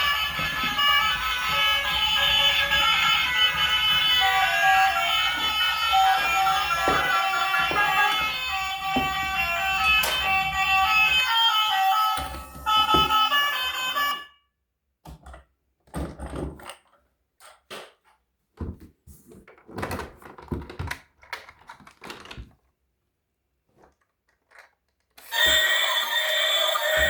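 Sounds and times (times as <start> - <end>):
toys and packaging handled: 0.0 - 14.2, 19.2 - 22.8, 23.6 - 27.0.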